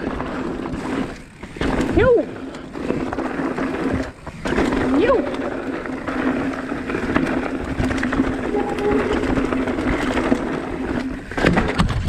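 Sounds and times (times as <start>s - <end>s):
bike clicks and rattles: 0.0s - 8.5s
bike tyres rolling over rock: 0.0s - 8.5s.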